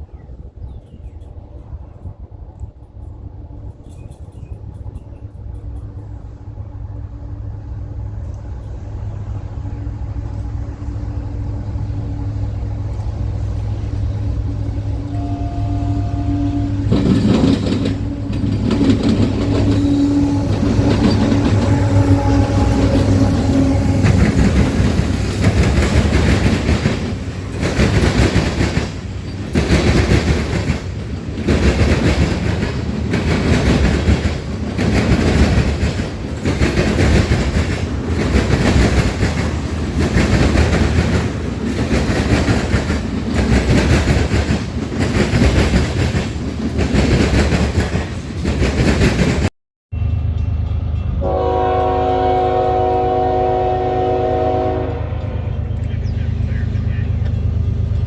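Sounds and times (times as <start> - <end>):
train horn chord: 6.1 - 25.1, 50.0 - 55.8
train wheels clattering over rails: 16.8 - 49.5.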